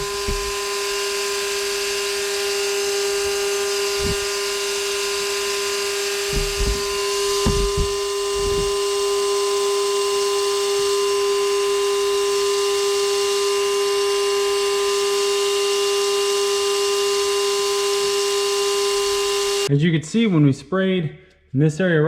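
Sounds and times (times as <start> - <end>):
low thumps: 0.0 - 1.9, 3.1 - 9.0
shop vac motor whine: 0.0 - 19.7.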